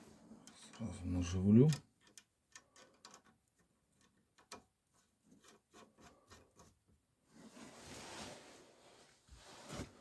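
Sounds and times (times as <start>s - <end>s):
small metallic clicks and taps: 1.6s - 6.8s
soft rustling: 7.2s - 10.0s.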